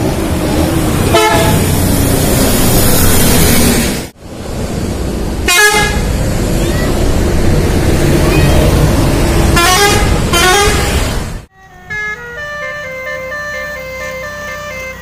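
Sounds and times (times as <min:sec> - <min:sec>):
vehicle and street noise: 0:00.0 - 0:15.0
musical bus horn blasts: 0:01.0 - 0:01.7, 0:05.4 - 0:06.0, 0:09.6 - 0:15.0.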